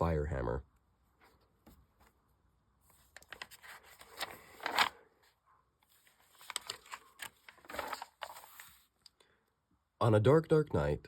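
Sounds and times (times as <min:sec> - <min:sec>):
book pages rustling: 0:02.8 - 0:09.2.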